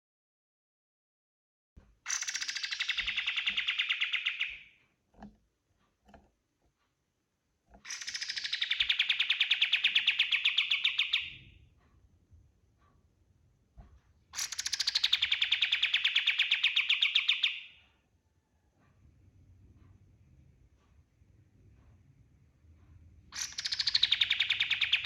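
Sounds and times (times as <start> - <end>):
bird singing rattling song: 2.0 - 5.3, 7.7 - 11.6, 14.3 - 17.9, 23.3 - 25.0.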